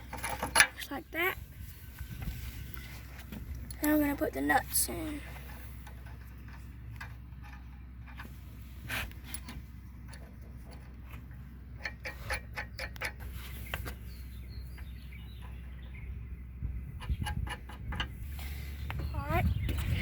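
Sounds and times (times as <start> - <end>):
metallic clicks of tightening nut: 11.8 - 13.3.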